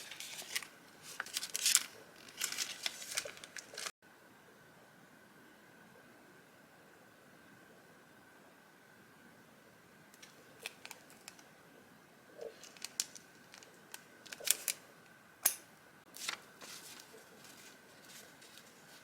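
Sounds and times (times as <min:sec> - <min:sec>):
paper tapping and crinkling: 0:00.0 - 0:03.9, 0:12.6 - 0:14.8, 0:16.1 - 0:19.0.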